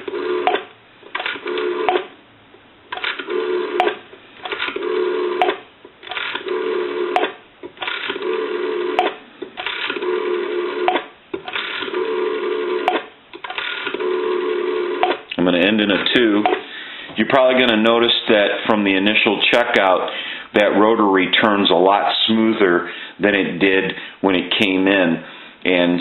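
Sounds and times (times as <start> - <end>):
rotary phone dial whirring and clicking: 0.0 - 2.1, 2.9 - 15.2.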